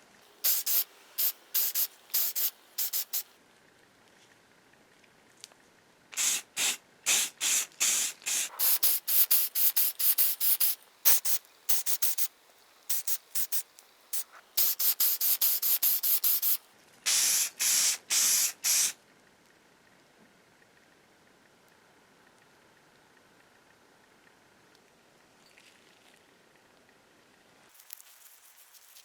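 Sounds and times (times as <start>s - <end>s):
sprayer hissing in bursts: 0.3s - 3.3s, 6.2s - 12.3s, 12.9s - 19.0s.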